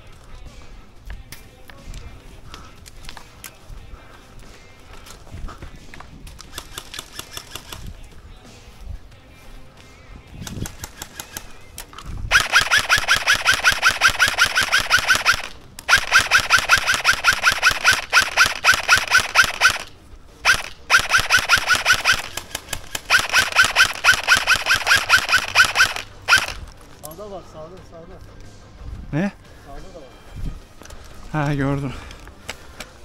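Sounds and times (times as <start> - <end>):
airsoft rifle full-auto bursts: 6.5 - 7.8, 12.3 - 26.6.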